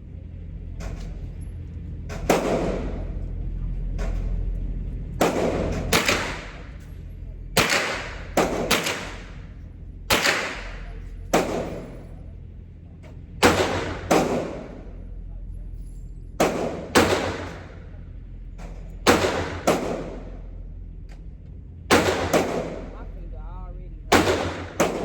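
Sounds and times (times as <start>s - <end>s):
pistol shots: 2.1s - 3.1s, 5.2s - 6.9s, 7.6s - 12.1s, 13.4s - 14.9s, 16.4s - 17.9s, 19.0s - 20.4s, 21.9s - 23.0s, 24.1s - 25.0s.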